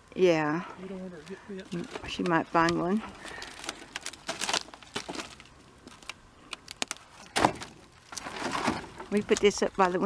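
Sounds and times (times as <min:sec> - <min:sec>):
scraping: 0:01.2 - 0:10.0
wooden boards knocking and clattering: 0:07.3 - 0:09.2.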